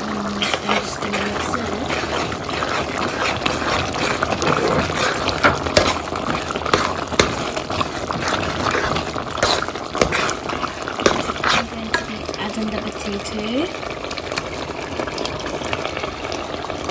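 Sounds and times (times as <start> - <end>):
food sizzling and bubbling in pan: 0.0 - 16.9
utensil clicking against pan: 0.4 - 12.2.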